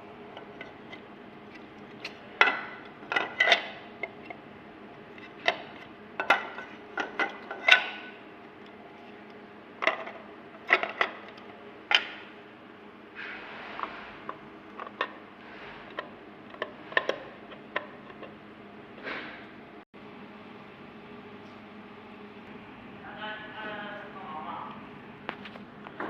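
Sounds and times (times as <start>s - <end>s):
steady machine hum: 0.0s - 26.0s.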